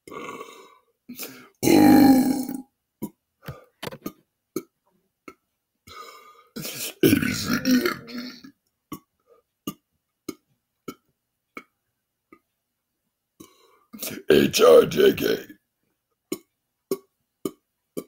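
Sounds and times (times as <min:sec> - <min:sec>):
man belching: 0:00.0 - 0:00.5, 0:01.2 - 0:02.7, 0:06.6 - 0:09.1.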